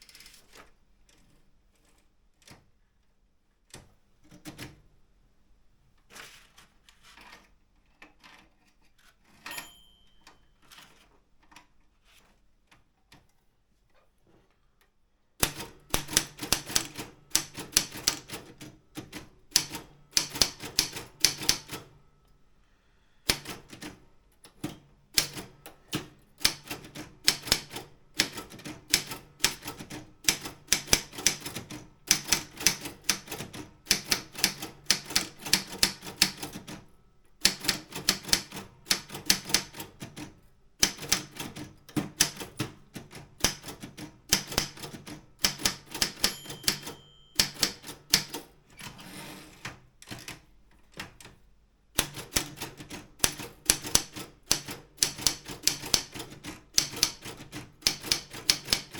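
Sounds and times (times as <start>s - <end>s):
typewriter bell ringing: 9.4s - 10.8s, 45.6s - 48.4s
typewriter keys striking: 15.4s - 21.9s, 24.6s - 36.8s, 37.4s - 48.6s, 52.0s - 58.9s.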